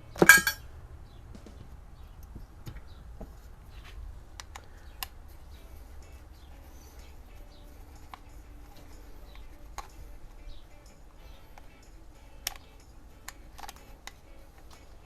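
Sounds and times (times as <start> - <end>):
small metal parts clicking: 0.2 - 0.6, 7.9 - 15.0.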